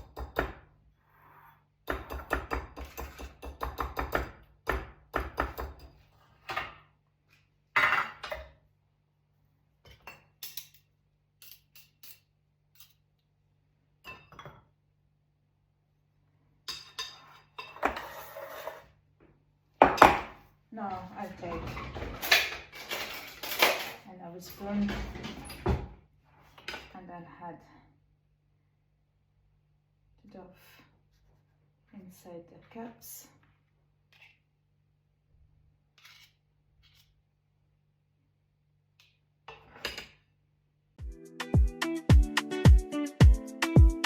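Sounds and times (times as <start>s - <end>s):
utensils clinking against a bowl: 9.9s - 13.0s, 21.6s - 24.0s.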